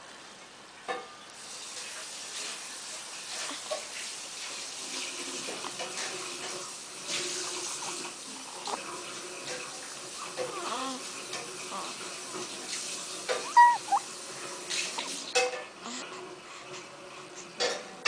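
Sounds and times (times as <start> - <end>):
water running from a tap: 1.4 - 15.4.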